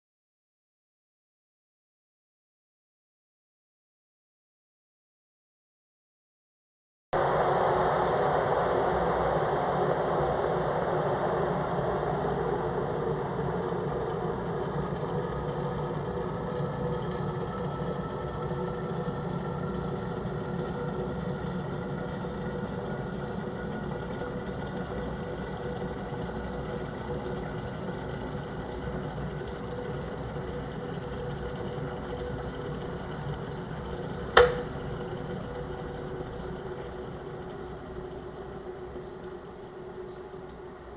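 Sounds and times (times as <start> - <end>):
kettle boiling: 7.2 - 40.9
kettle switch click: 34.4 - 34.7.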